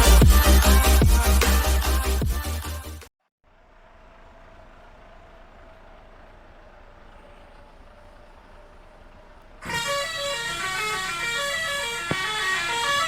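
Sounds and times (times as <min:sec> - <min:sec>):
bus engine idling: 0:03.4 - 0:13.0.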